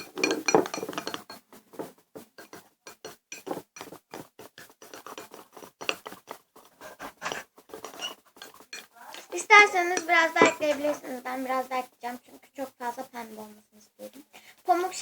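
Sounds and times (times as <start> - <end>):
spoon stirring sticky slime: 0.0 - 11.8.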